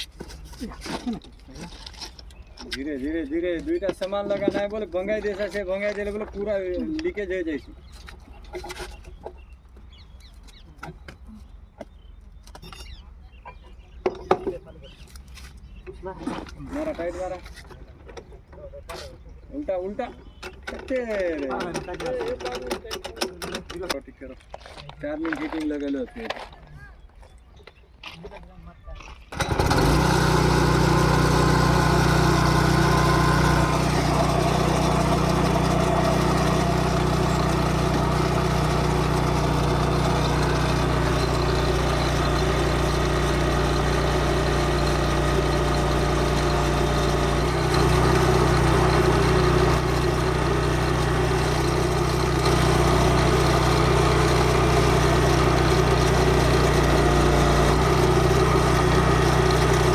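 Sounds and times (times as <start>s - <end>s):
engine running steadily: 29.3s - 59.9s.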